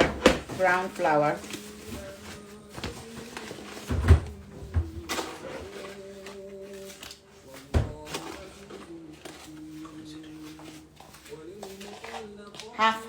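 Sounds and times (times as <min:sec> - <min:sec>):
kitchen things knocking and clunking: 0:00.0 - 0:01.3, 0:01.9 - 0:05.9, 0:07.6 - 0:08.8.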